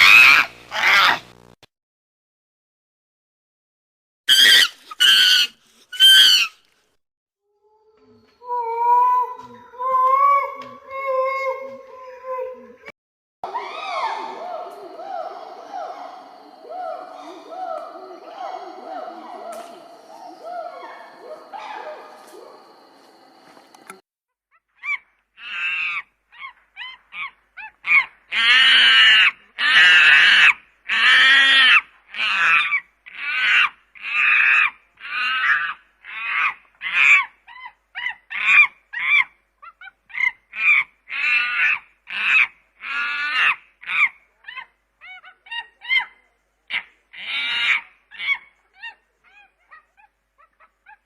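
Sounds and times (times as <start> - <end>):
chimpanzee calling: 13.4 - 23.5, 24.8 - 51.0.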